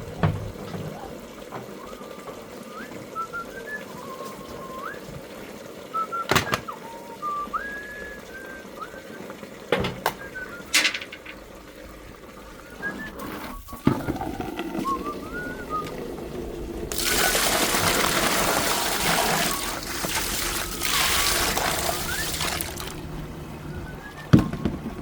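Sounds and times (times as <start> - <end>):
person whistling a slow tune: 1.7 - 9.4, 10.0 - 11.0, 12.6 - 16.0, 23.6 - 25.0.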